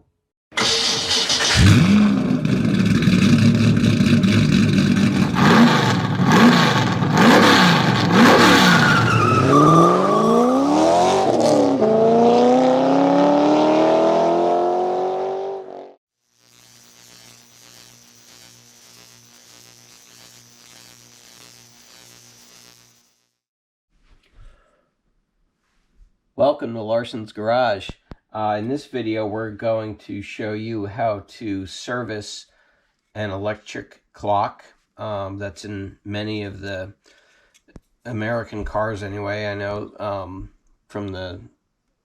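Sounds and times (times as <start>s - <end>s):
car engine revving: 0.6s - 16.0s.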